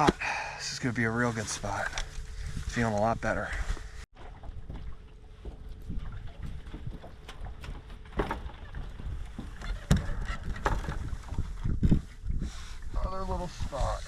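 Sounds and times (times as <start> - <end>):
wind rumble on microphone: 1.8 - 14.0
knocks on boat: 6.6 - 8.7.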